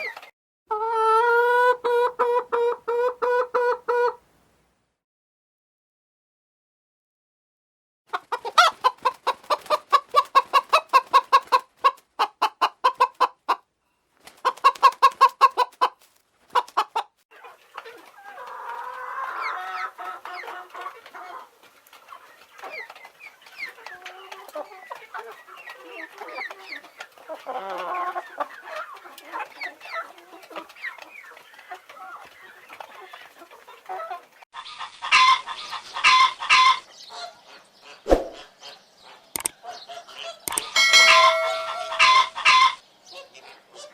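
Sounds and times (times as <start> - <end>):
flock of chickens clucking: 0.0 - 4.2, 8.1 - 43.9
hen clucking: 0.0 - 4.2, 8.1 - 13.7, 14.3 - 43.9.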